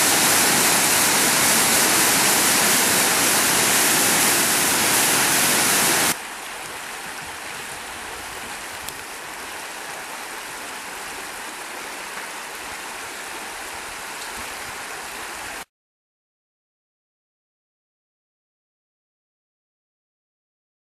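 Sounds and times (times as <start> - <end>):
waterfall rushing: 0.0 - 13.6
stream flowing: 0.0 - 15.6.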